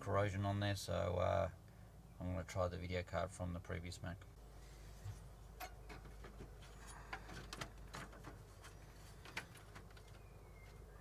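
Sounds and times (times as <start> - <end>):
steady low hum: 0.0 - 11.0
faint clicks and knocks of handling: 5.1 - 10.9.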